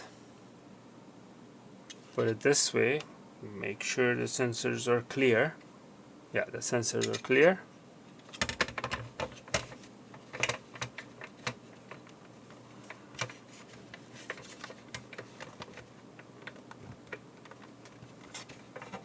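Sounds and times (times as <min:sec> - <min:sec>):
plastic parts clicking: 0:08.3 - 0:12.2, 0:12.8 - 0:19.0.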